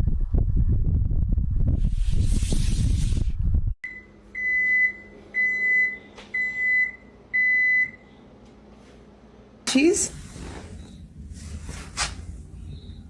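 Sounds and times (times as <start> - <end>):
loud low rumbling: 0.0 - 3.8
appliance beeper high beeps: 3.9 - 8.0.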